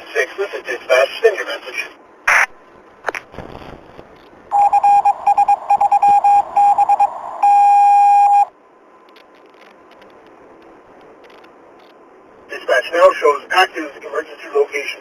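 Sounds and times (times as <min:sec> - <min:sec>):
faint radio hiss: 0:00.0 - 0:04.8, 0:09.0 - 0:15.0
electronic beeps over radio: 0:04.5 - 0:08.5.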